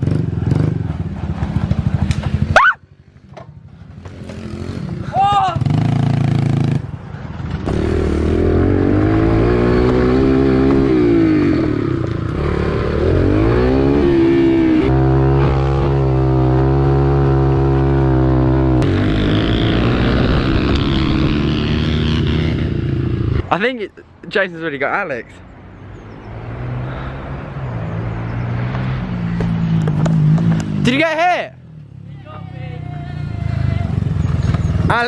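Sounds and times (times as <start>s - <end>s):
pit bike engine revving: 7.6s - 23.5s.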